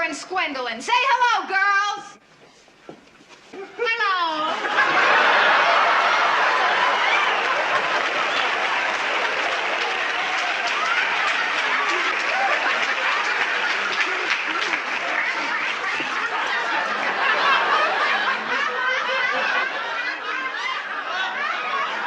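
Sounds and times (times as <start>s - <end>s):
audience laughing: 4.4s - 22.0s
audience applauding: 4.7s - 20.0s.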